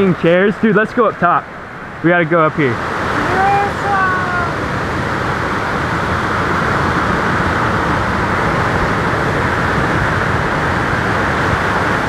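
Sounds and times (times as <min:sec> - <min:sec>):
ocean surf breaking: 0:01.3 - 0:12.0.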